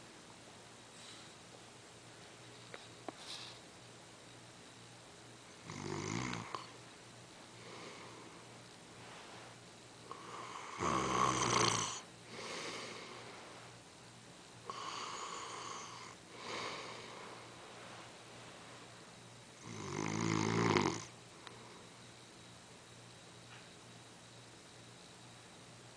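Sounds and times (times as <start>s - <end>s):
soft breaths: 0.9s - 1.6s, 2.2s - 3.8s, 7.5s - 10.8s, 11.8s - 13.9s, 14.6s - 19.2s
man snoring: 5.6s - 6.7s, 10.1s - 13.0s, 14.7s - 17.2s, 19.6s - 21.1s.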